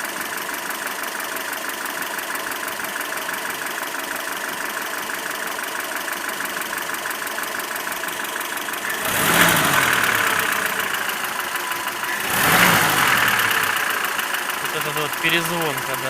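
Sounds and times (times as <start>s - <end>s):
knocking engine idling: 0.0s - 16.0s
engine revving: 8.7s - 16.0s.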